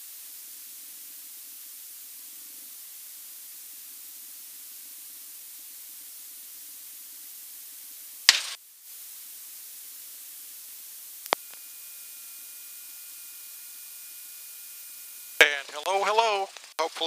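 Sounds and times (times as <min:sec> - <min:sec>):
faint steady tones: 0:00.0 - 0:08.2, 0:08.8 - 0:17.0
electronic hiss: 0:00.0 - 0:17.0
loud static burst: 0:08.3 - 0:17.0
short click: 0:11.2 - 0:11.6.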